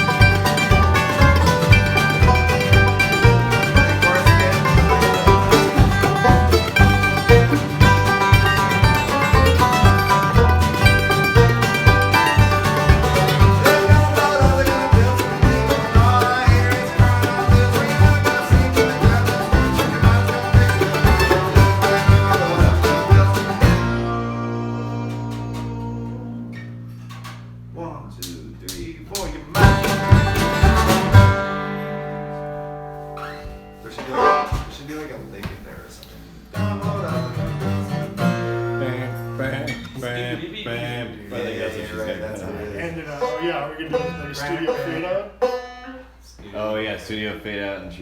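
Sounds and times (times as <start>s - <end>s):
band playing up-tempo song: 0.0s - 26.3s, 29.6s - 31.8s
plucked strings: 0.0s - 27.8s, 29.5s - 34.8s
bass beat: 0.0s - 31.7s.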